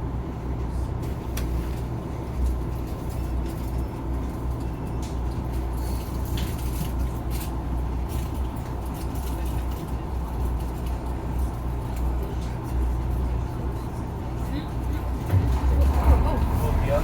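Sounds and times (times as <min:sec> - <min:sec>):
boat engine humming: 0:13.8 - 0:17.0.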